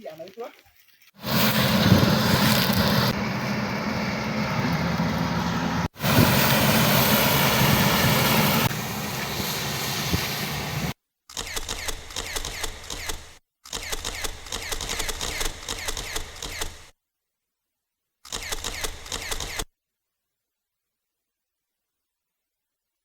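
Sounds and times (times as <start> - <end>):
combine harvester running: 1.2 - 10.9
rapid clicks: 11.3 - 16.9.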